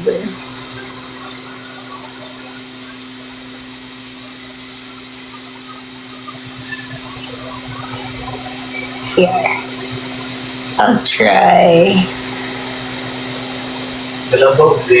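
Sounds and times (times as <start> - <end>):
faint voices: 0.0 - 15.0
steady hum with hiss: 0.0 - 15.0.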